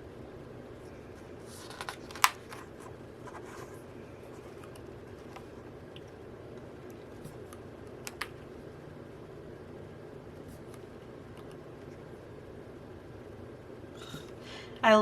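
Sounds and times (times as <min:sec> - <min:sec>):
paper rustling: 0:01.4 - 0:04.7.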